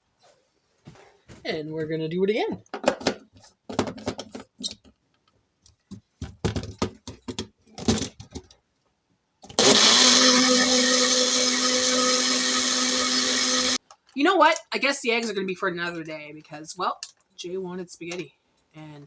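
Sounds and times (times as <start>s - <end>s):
blender motor running: 9.5s - 13.8s.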